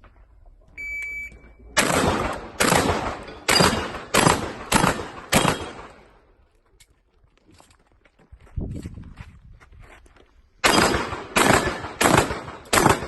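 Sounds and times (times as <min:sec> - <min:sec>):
shot timer beep: 0:00.8 - 0:01.7
shotgun shots: 0:01.8 - 0:06.2, 0:10.6 - 0:13.0.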